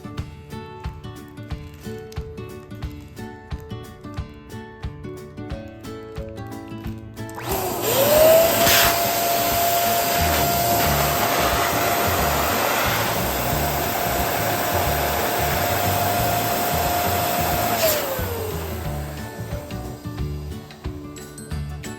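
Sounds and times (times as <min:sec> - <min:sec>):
electric balloon pump whine: 0:07.4 - 0:21.1.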